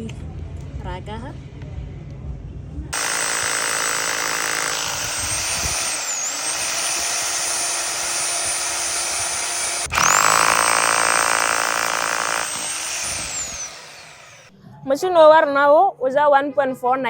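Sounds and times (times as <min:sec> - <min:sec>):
electric hammer drill whining: 0:03.0 - 0:14.5.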